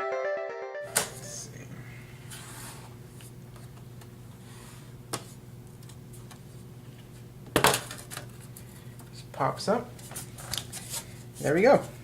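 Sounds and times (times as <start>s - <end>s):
steady low hum: 1.1s - 7.5s.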